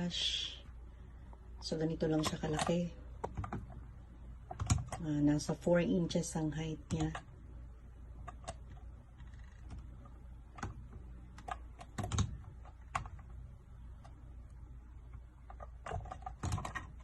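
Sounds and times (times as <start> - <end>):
plastic toy clicks and knocks: 15.4 - 17.0.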